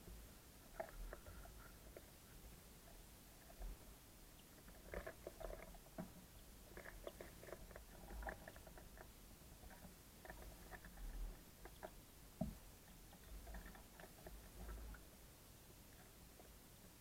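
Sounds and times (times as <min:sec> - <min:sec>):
birds pecking at seed: 0:04.4 - 0:15.1.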